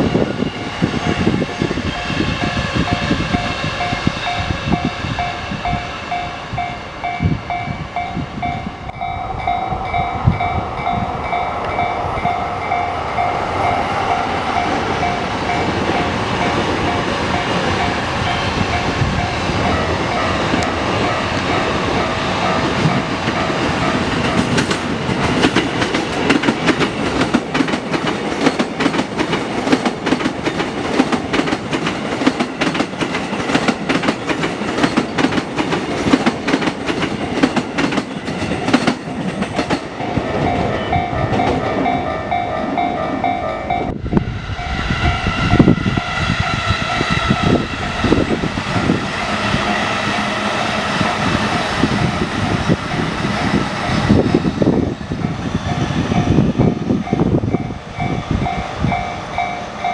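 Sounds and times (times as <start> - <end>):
level-crossing bell ringing: 2.0 - 24.5, 40.4 - 43.9, 55.2 - 59.9
train wheels clattering over rails: 9.6 - 43.8.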